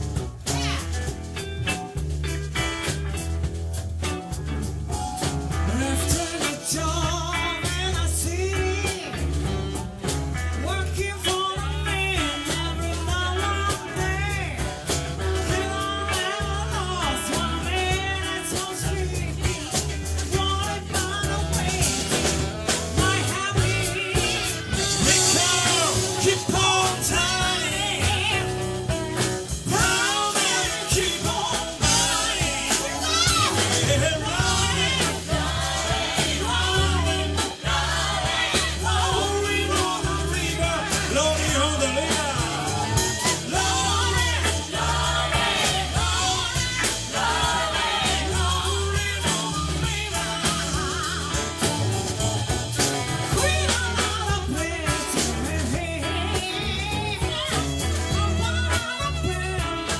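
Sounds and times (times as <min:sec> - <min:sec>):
rock band playing: 0:00.0 - 0:59.9
person singing: 0:15.2 - 0:37.8, 0:53.3 - 0:59.9.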